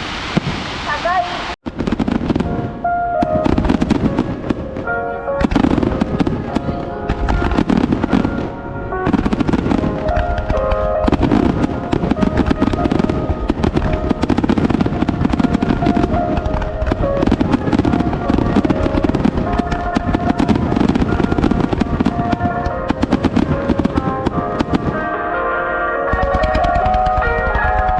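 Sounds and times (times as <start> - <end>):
fireworks crackling and popping: 0.0 - 25.2, 26.1 - 27.9
music playing: 2.0 - 27.9.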